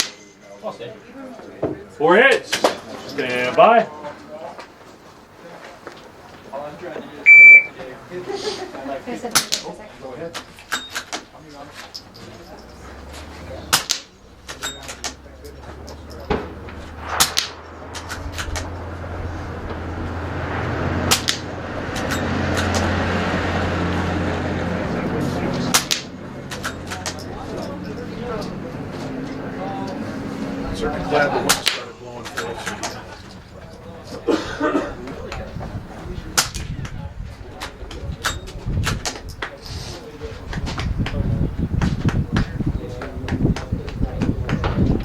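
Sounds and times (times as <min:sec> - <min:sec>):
bullet hitting steel target: 0:16.2 - 0:19.0
rifle shots: 0:16.4 - 0:19.0
wind on microphone: 0:16.4 - 0:22.0, 0:35.4 - 0:39.4, 0:40.4 - 0:45.0.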